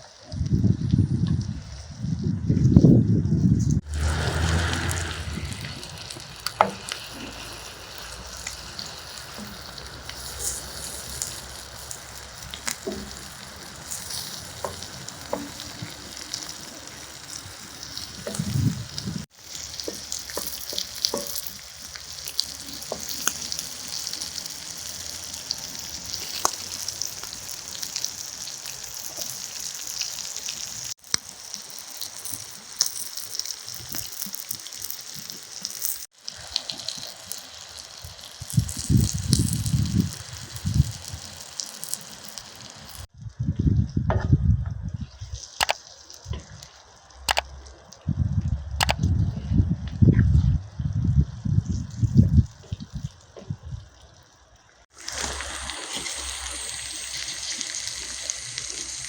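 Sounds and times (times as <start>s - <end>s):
food sizzling in a pan: 3.8s - 43.1s, 51.8s - 59.0s
utensil clicks stirring: 45.6s - 45.8s, 47.3s - 47.5s, 48.8s - 49.0s.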